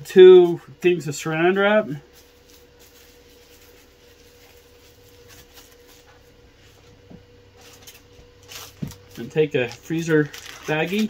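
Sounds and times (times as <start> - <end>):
faint steady hum: 0.0 - 11.0
plastic cling wrap rustling: 1.6 - 6.8, 7.6 - 11.0.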